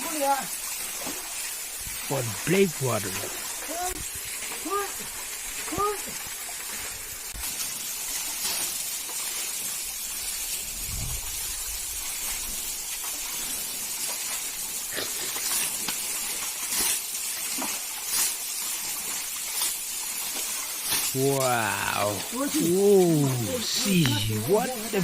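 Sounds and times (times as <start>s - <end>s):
stream water rushing: 0.0s - 16.6s, 17.2s - 25.0s.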